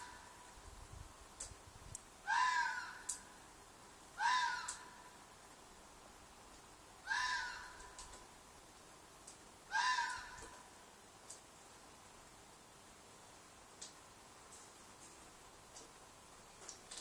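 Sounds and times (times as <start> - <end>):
fox shrieking: 2.3 - 3.2, 4.2 - 4.9, 7.0 - 7.8, 9.7 - 10.5.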